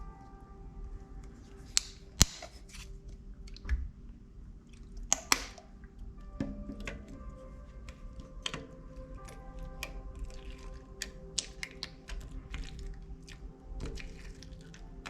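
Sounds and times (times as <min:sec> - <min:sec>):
sticky slime ticks: 0:04.7 - 0:06.2, 0:07.8 - 0:15.0.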